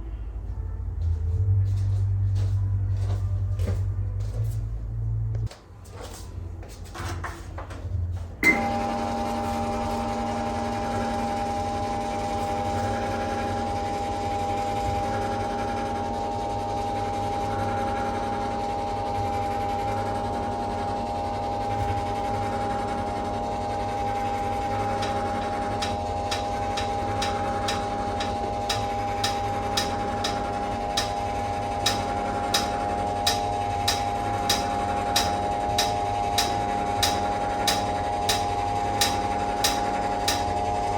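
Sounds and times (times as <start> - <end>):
treadmill motor humming: 7.7 - 40.9
sharp metallic ding: 8.4 - 8.7.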